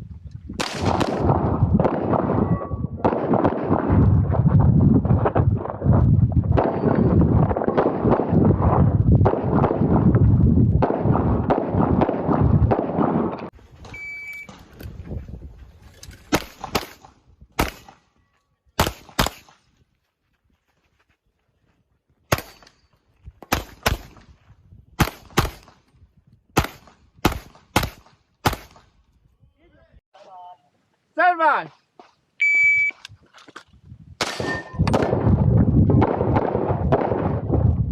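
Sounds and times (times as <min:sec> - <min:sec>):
pistol shots: 0:00.6 - 0:02.3, 0:16.3 - 0:18.0, 0:18.8 - 0:19.6, 0:23.5 - 0:24.2, 0:25.0 - 0:25.8, 0:26.6 - 0:28.9, 0:34.2 - 0:35.2
shot timer beep: 0:13.9 - 0:14.6, 0:32.4 - 0:33.0.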